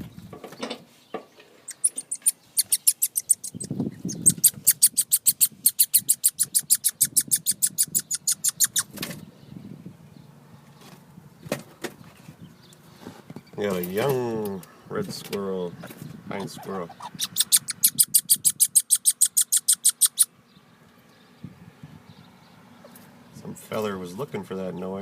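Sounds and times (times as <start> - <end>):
squirrel chattering: 1.7 - 9.0, 15.8 - 20.3.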